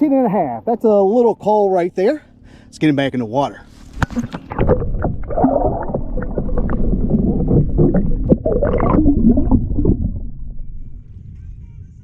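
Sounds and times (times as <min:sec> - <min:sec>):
water splashing beside kayak: 0:03.7 - 0:11.1
wind rumble on microphone: 0:04.0 - 0:12.0.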